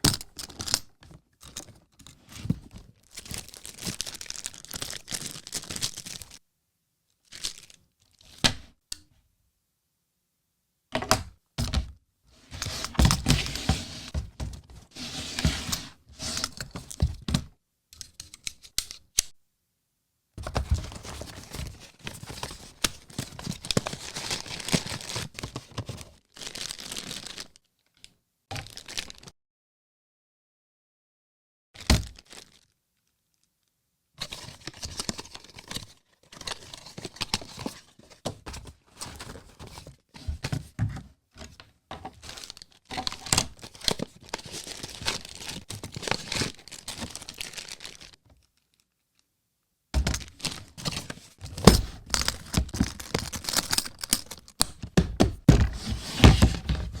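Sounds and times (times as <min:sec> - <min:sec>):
packaging crinkling and tearing: 0:00.1 - 0:06.4, 0:07.2 - 0:08.4, 0:20.5 - 0:29.3, 0:31.8 - 0:32.8, 0:34.3 - 0:38.2, 0:42.1 - 0:48.9, 0:50.0 - 0:54.9
box handling clicks and thunks: 0:51.0 - 0:53.8, 0:54.8 - 0:57.0.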